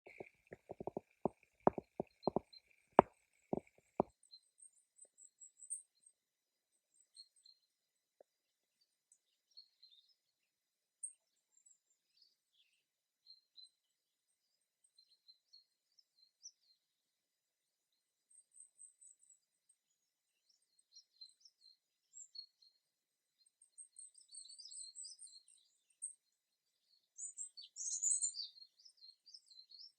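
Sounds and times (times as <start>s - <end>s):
songbirds chirping: 0.0s - 6.1s, 18.3s - 29.9s
loud knocks and thumps: 0.1s - 1.0s, 1.7s - 2.4s.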